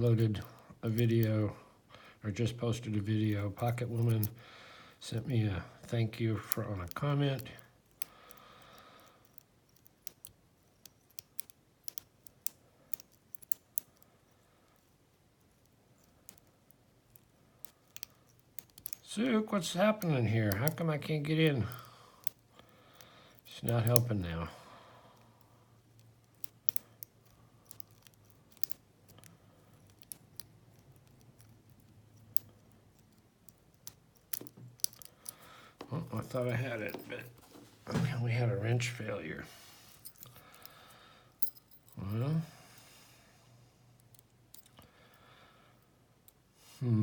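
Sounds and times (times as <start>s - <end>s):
lock pick clicking in padlock: 6.4s - 14.1s, 15.5s - 19.1s, 25.9s - 35.5s.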